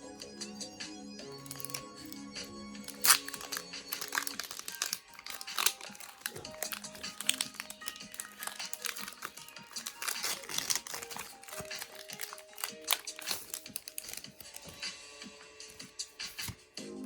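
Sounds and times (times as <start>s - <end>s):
quiet background music: 0.0s - 17.0s
foil wrapper crinkling: 1.3s - 2.2s, 2.8s - 15.0s
trading cards clicking and rustling: 1.3s - 2.2s, 2.8s - 16.6s.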